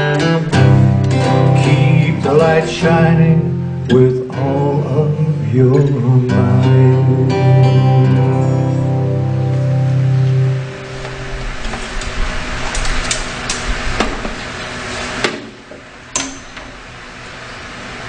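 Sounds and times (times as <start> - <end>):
acoustic guitar chord: 0.0 - 12.7
rough background rustle: 10.0 - 15.2.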